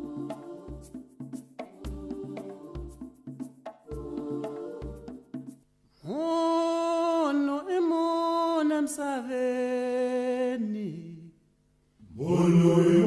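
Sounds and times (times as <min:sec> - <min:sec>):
person chanting: 0:12.0 - 0:13.0.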